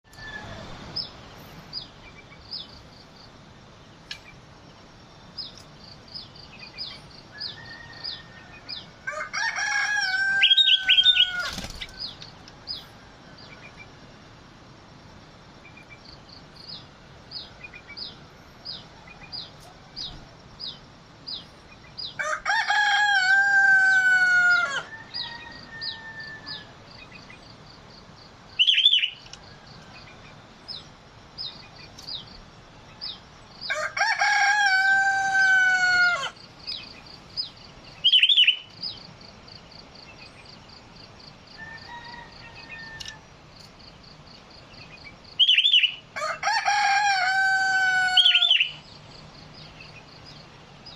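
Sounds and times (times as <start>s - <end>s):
rooster crowing: 0.1s - 0.8s, 7.3s - 13.6s, 22.2s - 26.8s, 33.6s - 36.4s, 41.6s - 43.3s, 46.1s - 48.8s.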